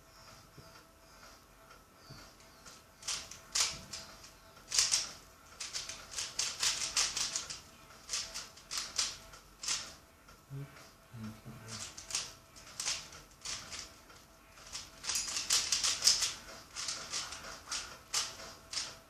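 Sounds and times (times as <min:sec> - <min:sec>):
puzzle cube clicking: 0:03.0 - 0:04.1, 0:04.7 - 0:05.0, 0:05.6 - 0:09.9, 0:11.7 - 0:13.9, 0:14.6 - 0:19.0.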